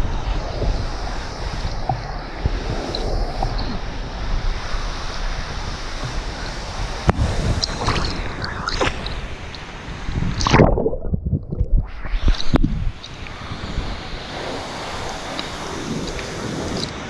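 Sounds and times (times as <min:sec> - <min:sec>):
wind rumbling on microphone: 0:00.0 - 0:17.0
waterfall rushing: 0:12.3 - 0:17.0.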